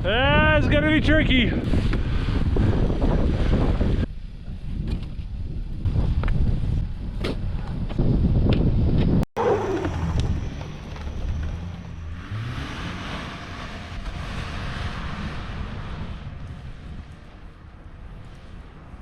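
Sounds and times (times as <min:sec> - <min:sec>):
vehicle engine working hard: 0:09.4 - 0:18.2.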